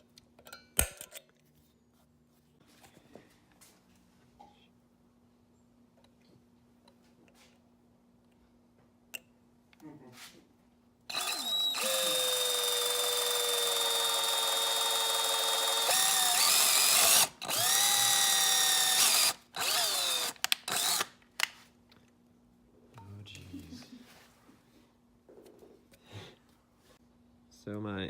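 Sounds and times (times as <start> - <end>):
electric drill boring: 11.1 - 21.1.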